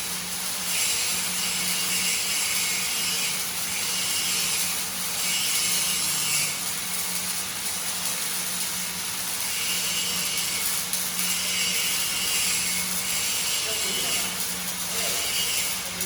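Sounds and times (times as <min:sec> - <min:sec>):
welding arc crackling and hissing: 0:00.0 - 0:16.0.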